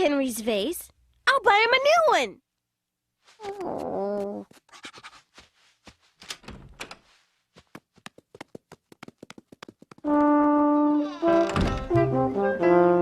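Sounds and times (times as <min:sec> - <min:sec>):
soft rustles: 0:03.2 - 0:09.9.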